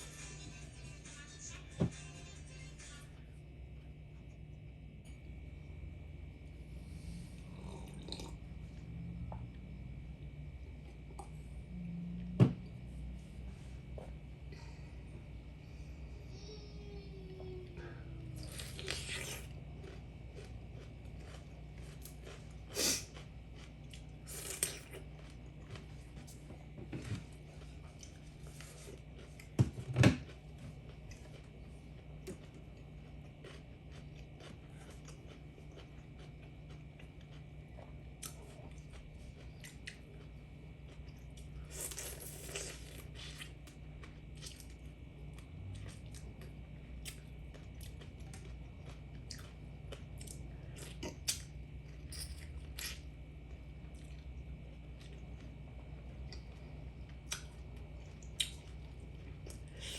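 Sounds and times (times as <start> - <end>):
person chewing and biting food: 18.4 - 26.4, 30.2 - 55.6, 56.2 - 59.9.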